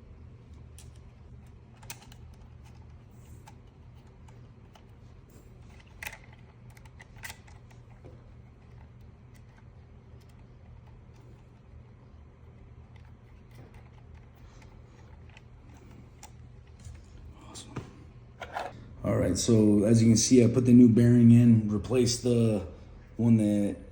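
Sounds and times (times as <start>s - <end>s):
steady low hum: 0.0s - 23.9s
small parts clicking and tapping: 0.7s - 5.0s, 5.6s - 11.6s.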